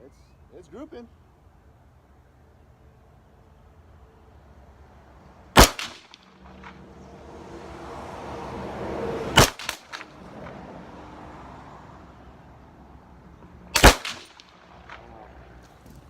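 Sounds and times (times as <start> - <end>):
faint echoing cracks: 5.6 - 6.8, 9.4 - 10.6, 13.8 - 15.8
rifle shots: 5.6 - 6.8, 9.4 - 10.1, 13.7 - 15.2.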